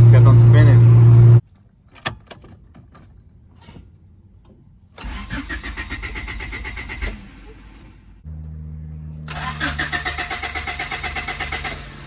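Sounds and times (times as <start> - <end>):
car starter cranking engine: 5.0 - 8.4, 9.2 - 12.0.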